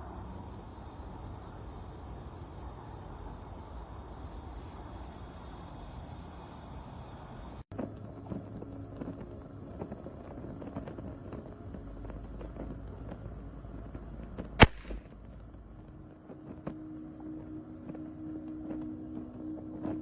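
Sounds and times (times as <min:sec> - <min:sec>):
low hum: 0:00.0 - 0:20.0
loud sharp crack: 0:14.6 - 0:15.2.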